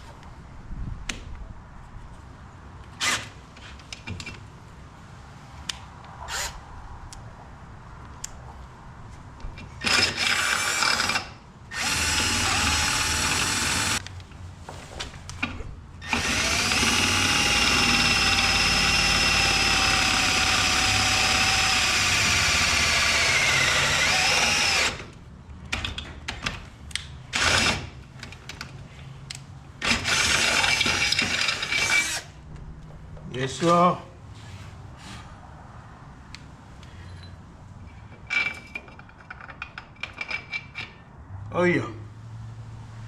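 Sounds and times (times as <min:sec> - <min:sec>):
power drill boring: 0:09.8 - 0:14.0, 0:16.0 - 0:25.1, 0:29.8 - 0:32.3.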